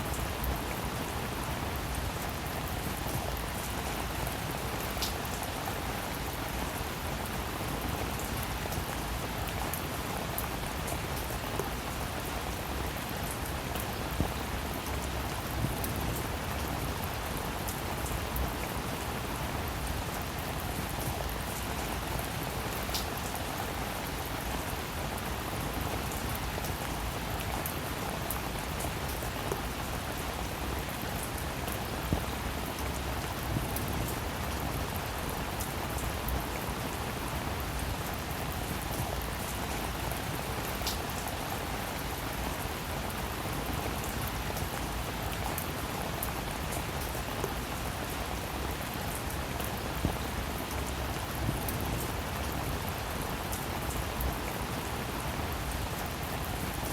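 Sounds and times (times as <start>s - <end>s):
steady rain: 0.0s - 56.9s.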